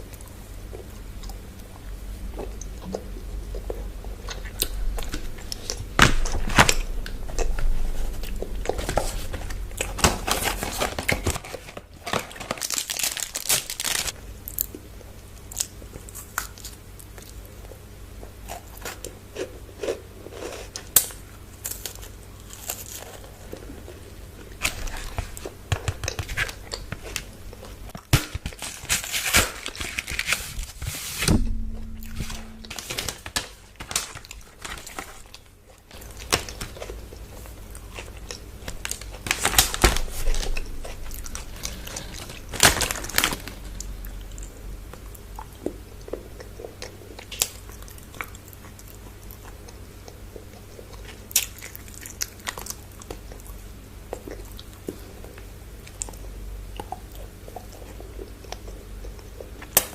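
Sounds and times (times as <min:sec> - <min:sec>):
wrappers crinkling and tearing: 0:08.8 - 0:14.2, 0:28.1 - 0:31.1, 0:32.8 - 0:43.9
crisp bites and chewing: 0:12.0 - 0:14.7.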